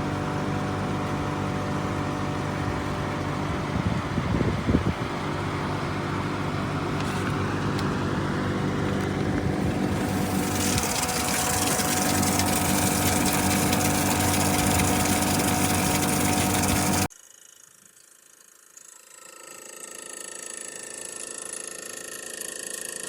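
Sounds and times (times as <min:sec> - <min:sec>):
air conditioner hum: 0:00.0 - 0:17.1.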